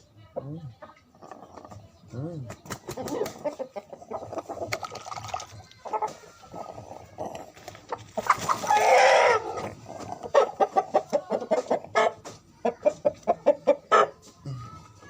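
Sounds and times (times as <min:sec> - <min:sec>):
chicken clucking: 0:00.4 - 0:15.0
water rinsing: 0:04.6 - 0:05.8.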